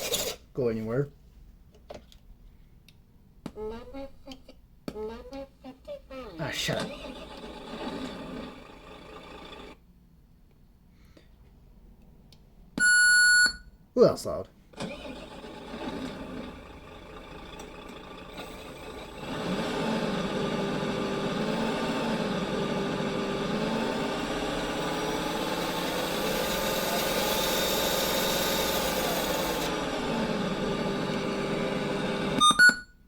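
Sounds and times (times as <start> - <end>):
simulated engine sound from speaker: 19.1 - 32.4.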